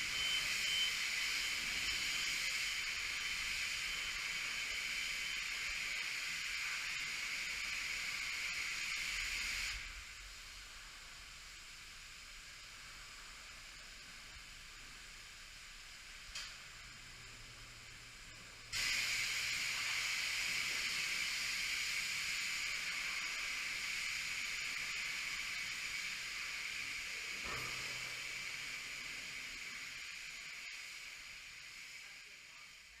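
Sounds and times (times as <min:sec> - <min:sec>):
pressure washer spraying water: 0:00.0 - 0:09.9, 0:18.7 - 0:32.8.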